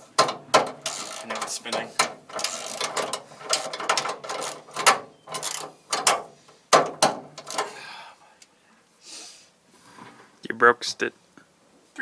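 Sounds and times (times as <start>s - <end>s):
ratchet wrench clicking: 0.7s - 1.4s, 2.0s - 6.2s.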